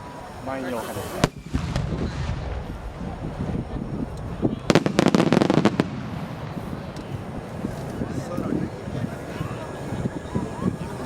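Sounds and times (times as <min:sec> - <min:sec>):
crackling firework bursts: 0:00.0 - 0:10.2
firework booms: 0:01.2 - 0:07.7.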